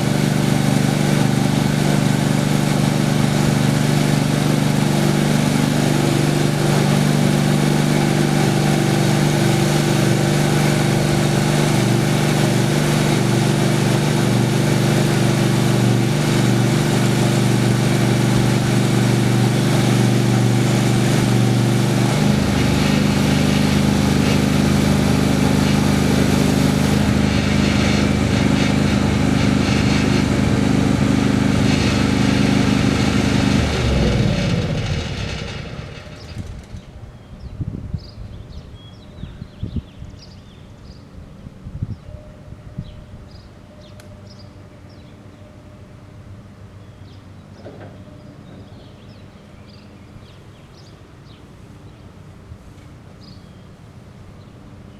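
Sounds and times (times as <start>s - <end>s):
sawmill engine running: 0.0s - 37.1s.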